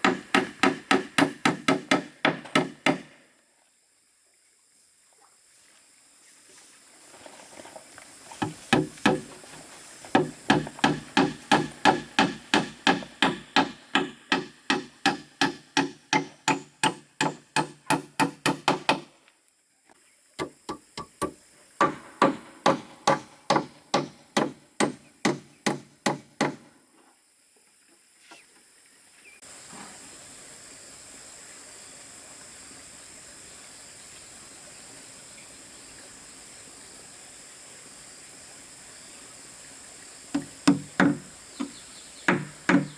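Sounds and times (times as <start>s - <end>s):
hammer driving nails into wood: 0.0s - 3.1s, 8.4s - 9.3s, 10.2s - 19.1s, 20.4s - 26.6s, 40.4s - 42.9s
steady low hiss: 4.5s - 19.5s, 28.2s - 42.9s.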